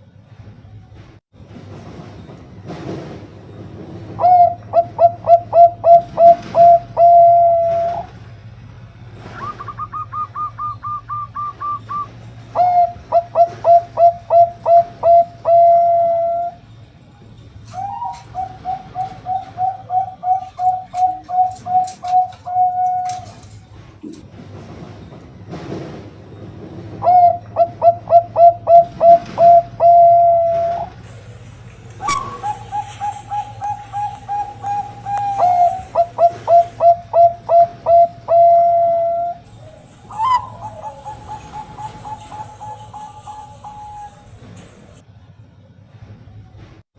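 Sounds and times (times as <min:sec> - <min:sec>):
dove cooing: 0:04.2 - 0:08.2, 0:09.4 - 0:16.6, 0:17.7 - 0:23.5, 0:27.0 - 0:45.0
steady low hum: 0:23.6 - 0:45.2
higher-pitched bird notes: 0:27.1 - 0:45.0.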